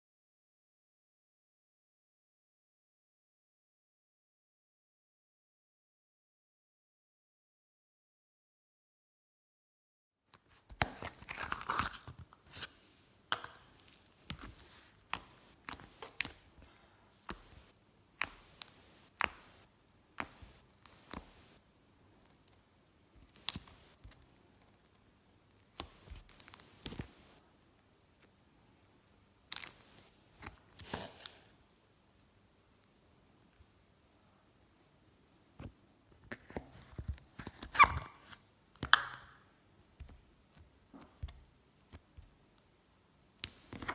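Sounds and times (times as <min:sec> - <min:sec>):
slime squishing with sticky pops: 0:13.3 - 0:21.6, 0:23.2 - 0:24.4, 0:25.5 - 0:27.4, 0:29.5 - 0:31.4.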